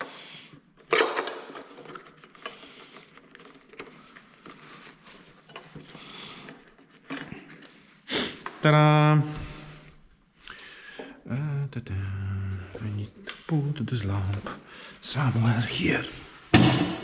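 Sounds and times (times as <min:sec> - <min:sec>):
hands rustling wiring: 0:00.0 - 0:08.6.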